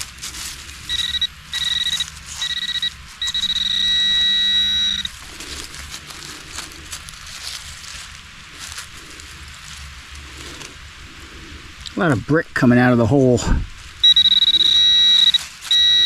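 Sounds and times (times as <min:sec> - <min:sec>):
steady electronic tone: 0:00.8 - 0:05.2, 0:14.0 - 0:16.0
short electronic beeps: 0:00.9 - 0:05.1, 0:14.0 - 0:16.0.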